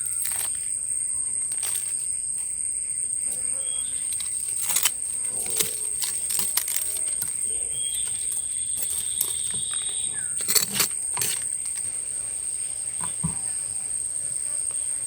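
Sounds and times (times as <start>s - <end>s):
clicks and crackles: 0.0s - 0.7s, 4.0s - 11.9s
high-pitched insect drone: 0.0s - 15.0s.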